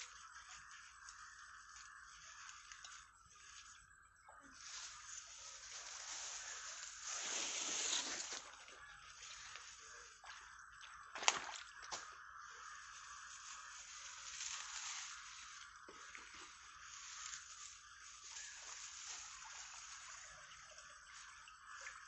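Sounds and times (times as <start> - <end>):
fast water sloshing and splashing: 5.4 - 12.2.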